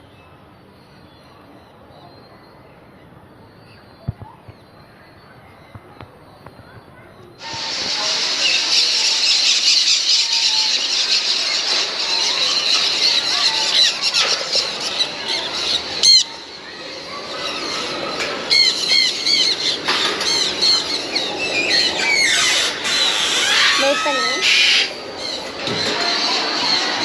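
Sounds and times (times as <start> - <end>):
caged birds chirping and squawking: 3.5 - 27.0
loud sharp bird squawk: 7.4 - 16.5, 17.4 - 25.5
bird rising-and-falling call: 17.4 - 25.4.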